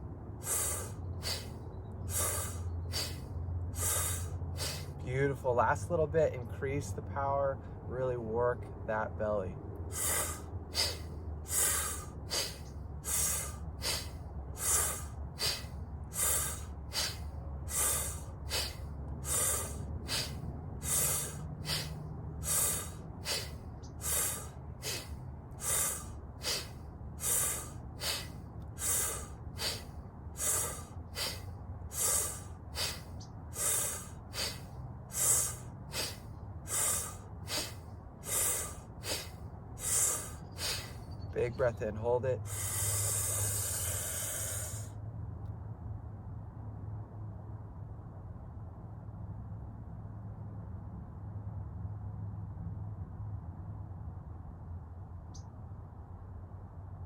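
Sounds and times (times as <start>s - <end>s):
rapid rhythmic breathing: 0.0s - 5.0s, 9.8s - 41.3s, 42.4s - 45.0s.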